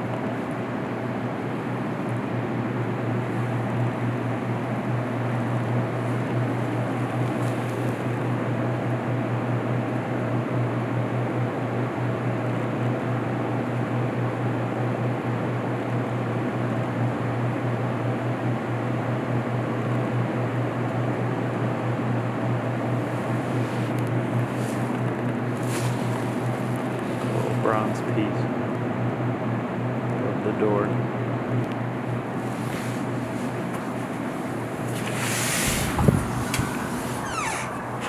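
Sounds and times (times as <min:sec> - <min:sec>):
constant rushing noise: 0:32.4 - 0:38.0
low hum: 0:34.0 - 0:38.0.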